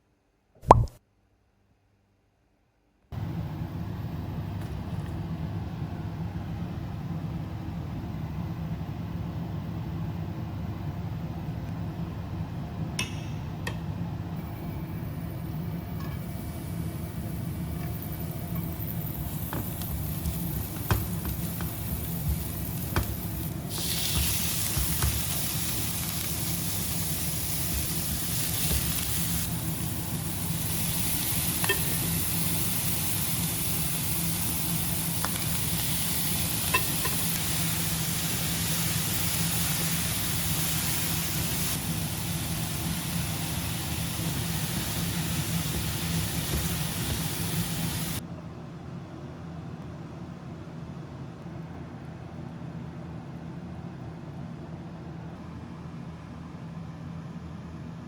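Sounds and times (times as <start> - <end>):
food sizzling in a hot pan: 14.6 - 48.2.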